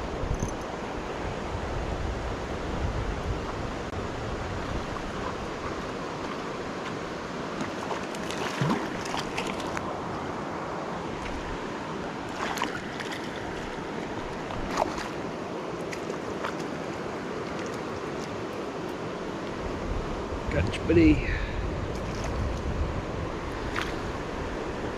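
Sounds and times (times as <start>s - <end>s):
flowing river water: 0.0s - 24.9s.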